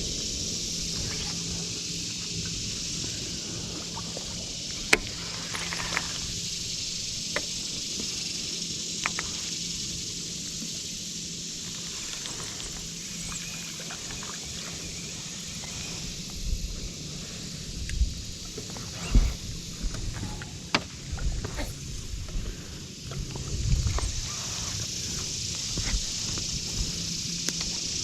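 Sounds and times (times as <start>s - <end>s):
steady high hiss: 0.0s - 28.0s.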